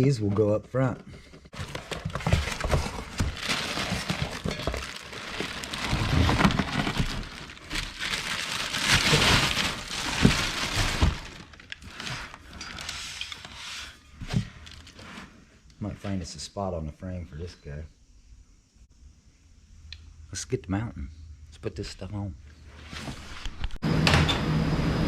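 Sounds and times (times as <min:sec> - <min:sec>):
packaging rustling and crackling: 0:01.4 - 0:13.5.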